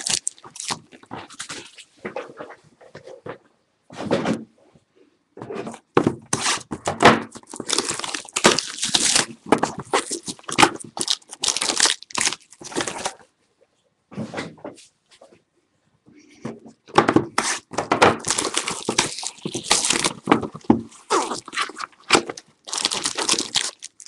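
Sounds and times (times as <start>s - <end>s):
cardboard and wrapper tearing: 0.0s - 1.7s, 7.3s - 13.2s, 17.4s - 24.0s.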